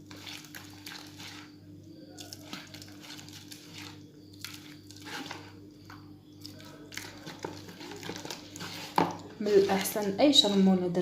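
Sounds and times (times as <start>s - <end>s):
spoon mashing wet paste: 0.0s - 10.6s.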